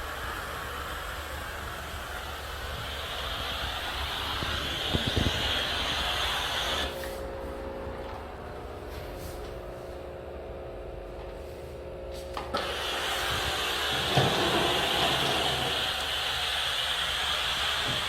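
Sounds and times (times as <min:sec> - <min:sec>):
steam hissing from nozzle: 0:00.0 - 0:07.2, 0:12.6 - 0:18.0
steam cleaner humming: 0:00.0 - 0:10.0, 0:11.4 - 0:18.0.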